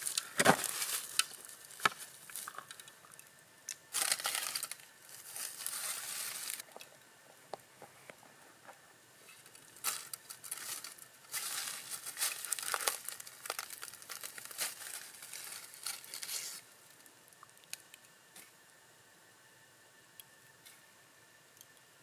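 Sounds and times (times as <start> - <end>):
thin sheet crumpling: 0.0 - 2.2, 4.0 - 6.6, 9.7 - 16.6.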